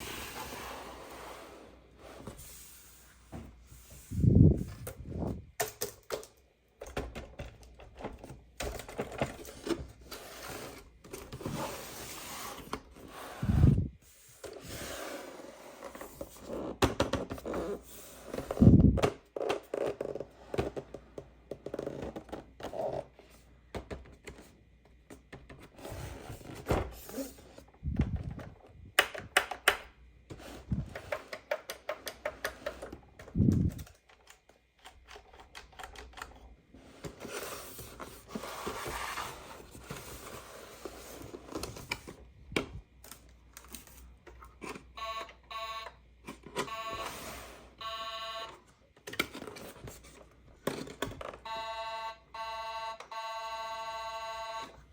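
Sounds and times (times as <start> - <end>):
toy packaging scraping and rustling: 9.0 - 13.8, 36.8 - 42.2, 49.1 - 51.4.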